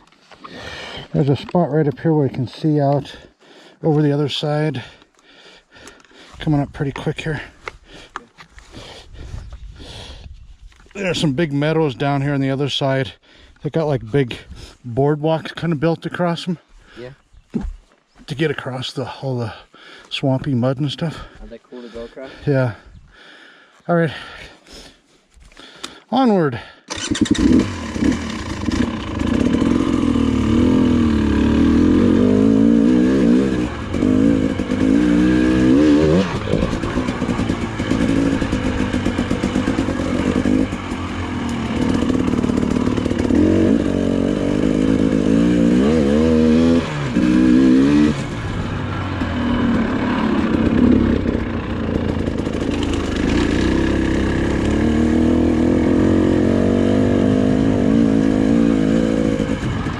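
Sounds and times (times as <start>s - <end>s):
dirt bike engine revving: 26.9s - 59.9s.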